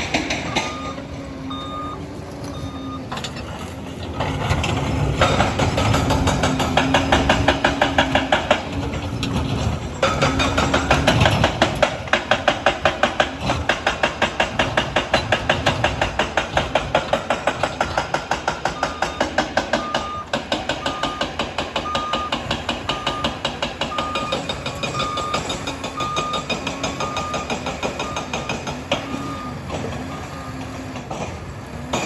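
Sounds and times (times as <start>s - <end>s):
reversing alarm beeping: 0.0s - 3.7s, 10.2s - 11.4s, 16.8s - 31.0s
low engine rumble: 0.0s - 32.0s
steel tracks clanking: 0.0s - 32.0s.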